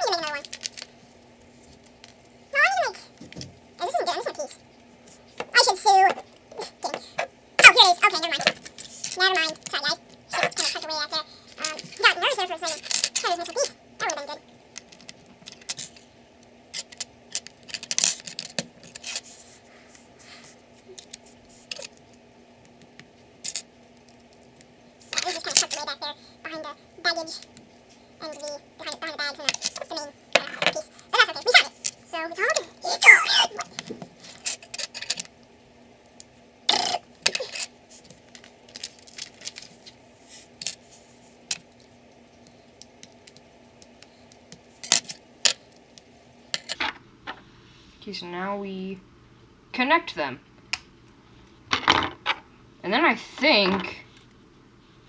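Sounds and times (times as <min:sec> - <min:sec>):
plastic pieces clicking and rattling: 0:16.7 - 0:19.2, 0:33.8 - 0:35.3, 0:38.3 - 0:39.8.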